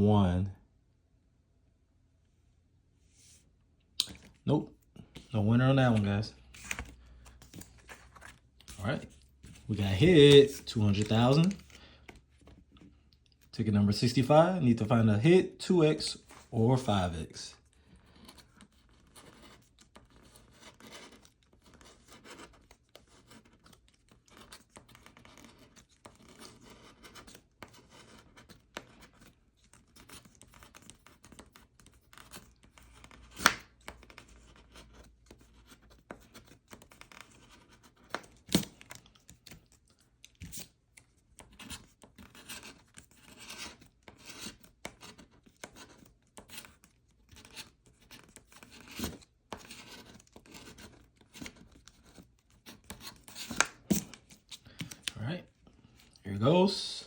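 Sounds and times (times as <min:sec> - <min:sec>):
lottery ticket scratching: 0:05.4 - 0:06.9, 0:07.6 - 0:11.8, 0:41.4 - 0:51.4.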